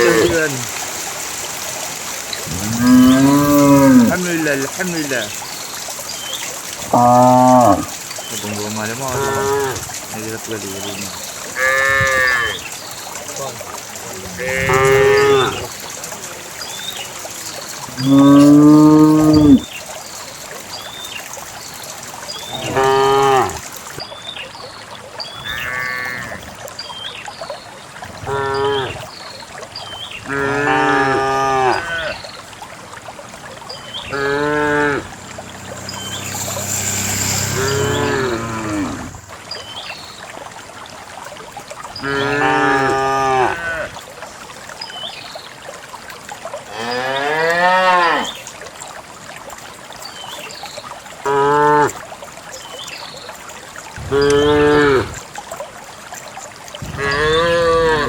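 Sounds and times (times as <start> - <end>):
cows mooing: 0.0 - 0.4, 2.5 - 4.2, 6.9 - 7.9, 9.1 - 9.9, 11.6 - 12.6, 14.3 - 15.7, 18.0 - 19.6, 22.5 - 23.6, 25.5 - 26.4, 30.3 - 32.1, 34.1 - 39.2.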